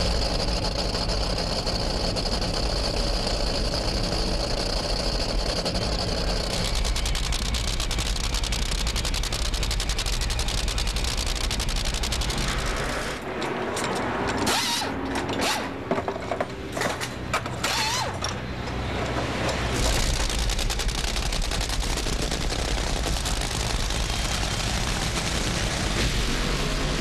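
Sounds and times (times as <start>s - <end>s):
heavy low rumble: 19.6s - 27.0s
dragster engine crackling pops: 19.8s - 26.7s.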